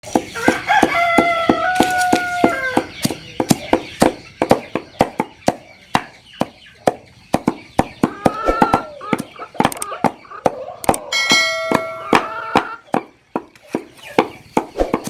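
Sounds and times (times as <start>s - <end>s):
sharp taps or knocks: 0.0s - 15.0s
chicken call: 8.0s - 12.8s.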